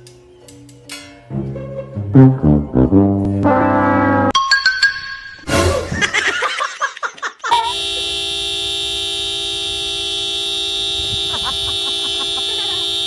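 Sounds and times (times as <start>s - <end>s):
steady horn-like tone: 7.7s - 13.0s.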